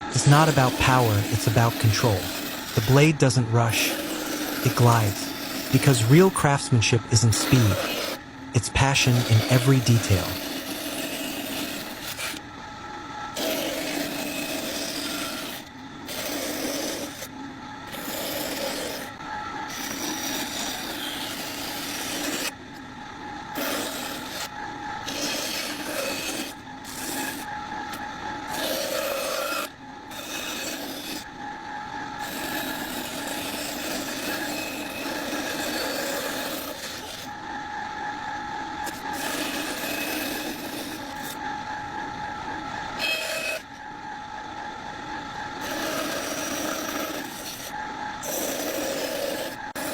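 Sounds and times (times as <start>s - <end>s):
hand tool scraping wood: 0.2s - 12.4s, 13.4s - 17.3s, 17.9s - 19.1s, 19.7s - 22.6s, 23.6s - 24.5s, 25.1s - 27.5s, 28.5s - 31.3s, 32.2s - 37.3s, 38.8s - 41.4s, 43.0s - 43.6s, 45.6s - 49.9s.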